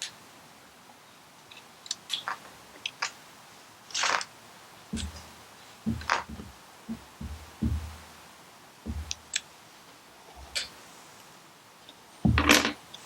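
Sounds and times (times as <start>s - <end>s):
light clicks of gun parts: 1.4s - 3.2s
soft knocks: 4.9s - 8.2s, 8.9s - 9.4s, 12.3s - 12.8s.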